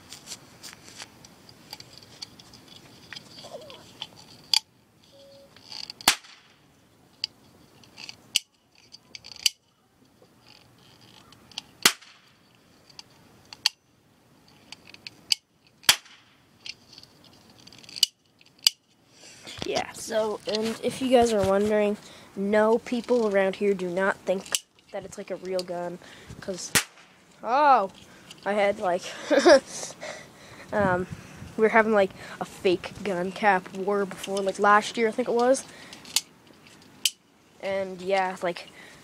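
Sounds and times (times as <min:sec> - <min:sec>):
toy cap gun pops: 0:26.7 - 0:27.1.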